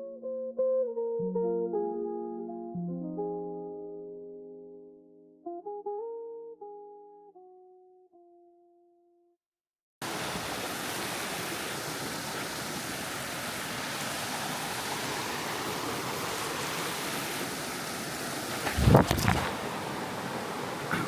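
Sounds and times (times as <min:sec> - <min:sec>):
waterfall and creek rushing: 0:10.0 - 0:21.0.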